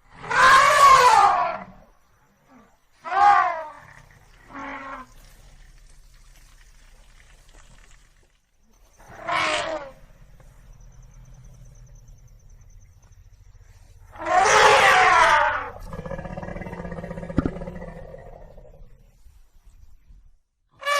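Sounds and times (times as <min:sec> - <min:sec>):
elephant calling: 0:08.9 - 0:13.0, 0:13.6 - 0:18.9.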